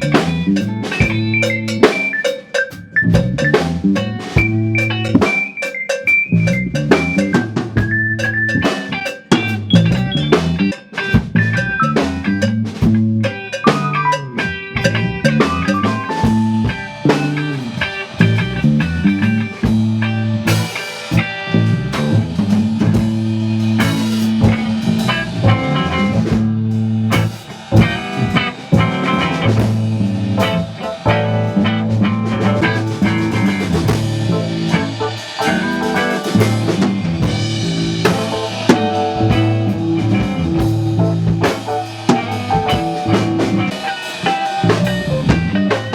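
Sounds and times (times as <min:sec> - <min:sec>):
moving bass line: 0:00.0 - 0:01.9, 0:02.9 - 0:05.3, 0:06.3 - 0:08.7, 0:09.5 - 0:45.9
rock music: 0:00.0 - 0:45.9
drum hits: 0:03.1 - 0:05.6, 0:14.8 - 0:45.7.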